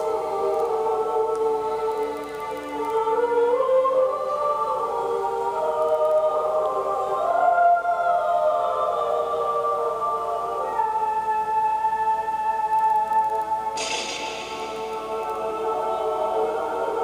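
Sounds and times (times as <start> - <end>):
choir-like voices: 0.0 - 17.0
slow sustained orchestral tones: 13.6 - 17.0.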